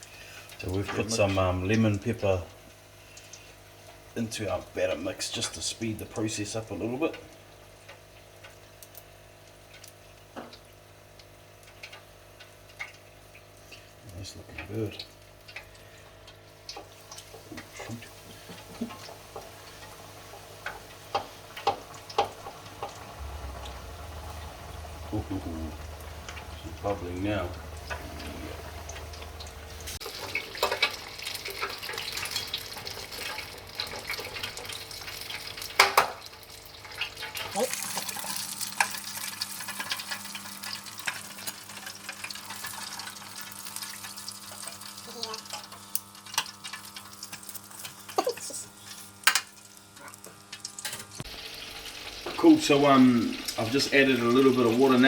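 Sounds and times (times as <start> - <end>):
fish deep frying in oil: 0.0 - 55.0
low bubbling rumble: 22.7 - 30.0.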